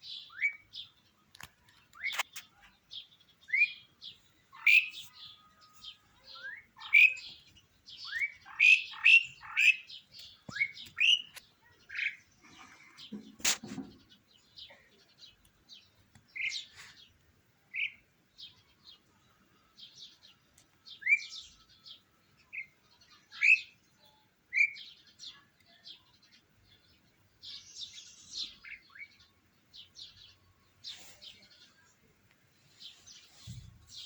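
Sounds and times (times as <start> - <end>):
small birds chirping: 0.0 - 34.0.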